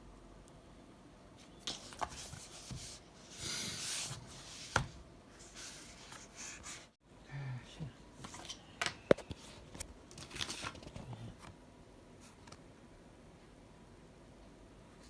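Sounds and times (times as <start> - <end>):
rustling scrape: 1.7 - 4.8.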